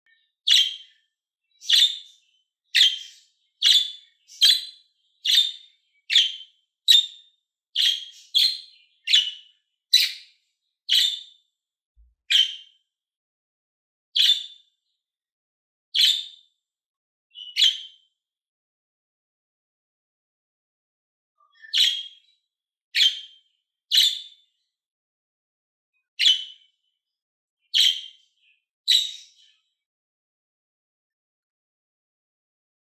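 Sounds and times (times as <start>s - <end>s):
bird chirping: 0.0s - 12.8s, 14.2s - 15.0s, 15.9s - 16.6s, 17.3s - 18.2s, 21.4s - 24.7s, 26.2s - 26.8s, 27.6s - 29.8s.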